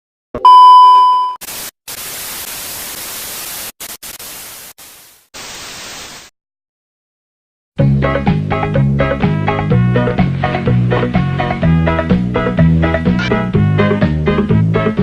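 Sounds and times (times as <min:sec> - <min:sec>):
electronic beep: 0:00.4 - 0:01.4
hissing static bursts: 0:01.4 - 0:06.3.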